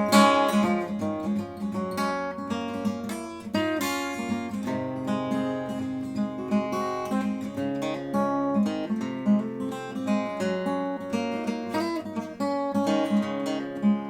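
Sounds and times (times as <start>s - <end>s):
acoustic guitar playing: 0.0s - 14.0s.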